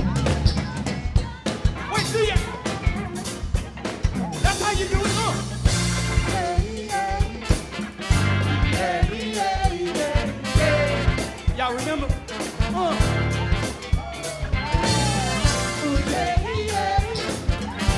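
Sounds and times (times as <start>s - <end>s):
drums and bass beat: 0.0s - 17.9s
person singing wordless melody: 6.2s - 7.6s, 8.7s - 17.9s.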